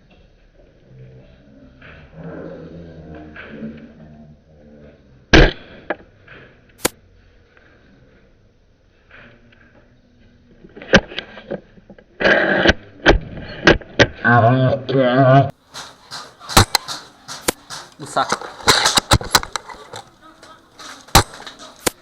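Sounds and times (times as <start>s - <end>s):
airsoft rifle firing knock: 15.7s - 22.0s
sharp clicks: 15.7s - 22.0s.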